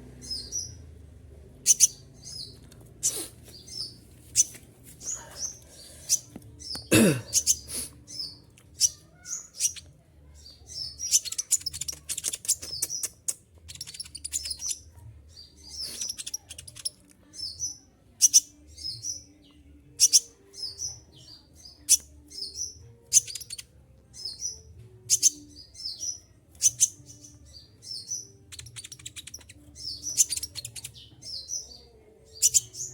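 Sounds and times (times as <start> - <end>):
bird chirping and chattering: 0.1 - 0.9, 1.6 - 19.3, 20.0 - 32.9.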